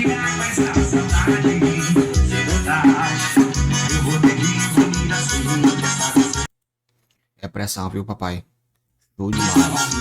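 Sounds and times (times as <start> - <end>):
latin dance music with heavy bass: 0.0 - 6.5, 9.4 - 10.0.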